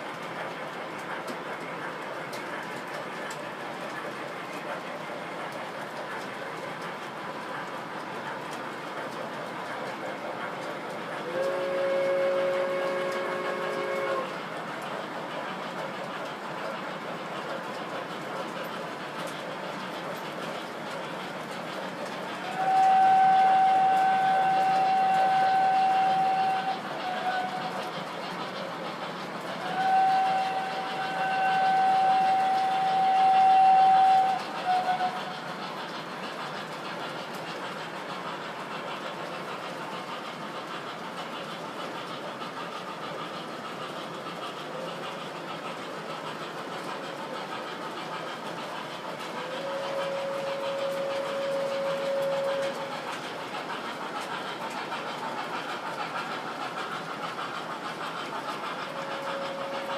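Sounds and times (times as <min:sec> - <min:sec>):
model trains running on track: 0:00.0 - 0:59.9
lower-pitched train whistle: 0:11.2 - 0:14.4, 0:22.4 - 0:28.0, 0:29.6 - 0:35.6, 0:49.4 - 0:53.0, 0:58.8 - 0:59.9
model train whistle blasts: 0:11.3 - 0:14.3, 0:22.4 - 0:27.8, 0:29.6 - 0:35.3, 0:49.5 - 0:52.8, 0:59.0 - 0:59.9.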